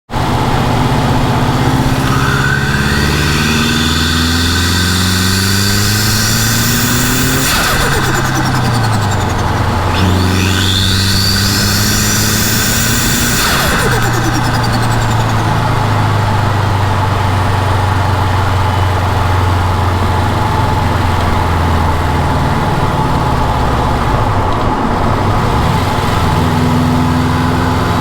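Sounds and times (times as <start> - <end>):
car engine accelerating hard: 0.2 - 28.0
high turbo whistle: 1.2 - 16.5
turbo flutter: 1.4 - 16.5.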